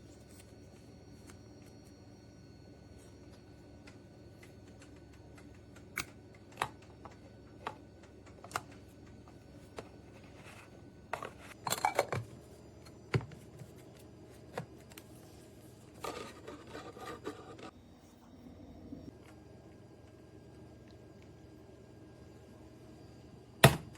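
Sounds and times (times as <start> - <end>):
rubbing and scraping: 16.0 - 17.7.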